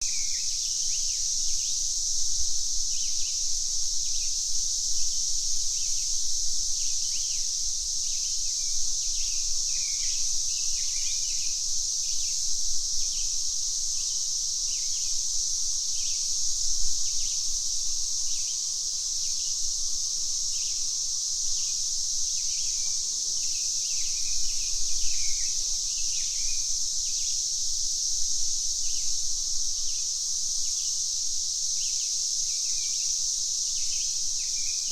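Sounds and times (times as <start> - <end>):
cicadas droning: 0.0 - 34.9.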